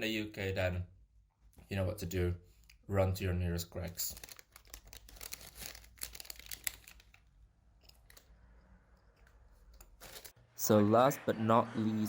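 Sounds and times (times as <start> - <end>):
packaging crinkling and rustling: 3.8 - 8.3, 9.8 - 10.4.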